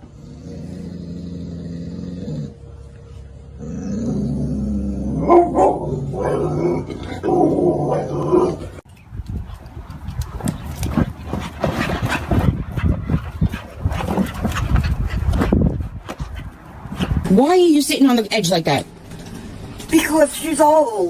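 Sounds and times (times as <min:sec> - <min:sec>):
dog growling moans: 0:00.0 - 0:08.8.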